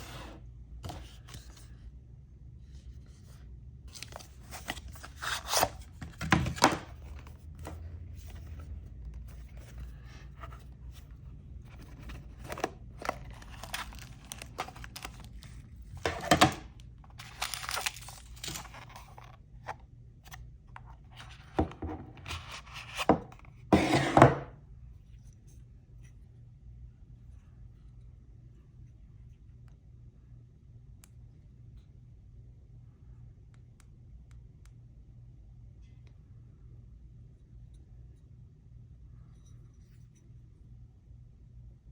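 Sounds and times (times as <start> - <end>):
packaging tearing and rustling: 12.2 - 19.3.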